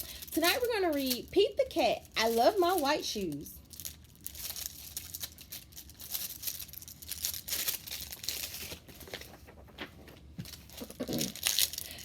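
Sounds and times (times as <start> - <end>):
book pages rustling: 4.4 - 11.8.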